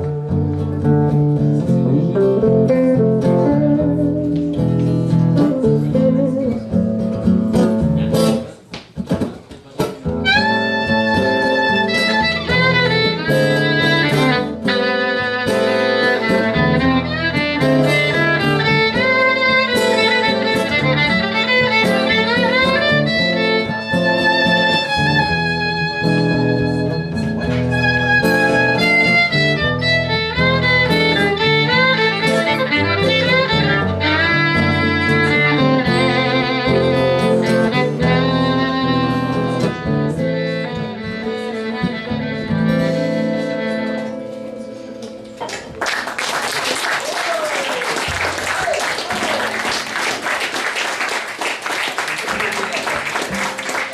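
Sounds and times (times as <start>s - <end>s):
acoustic guitar accompaniment: 0.0s - 46.7s, 47.3s - 53.9s
violin melody: 10.2s - 44.7s.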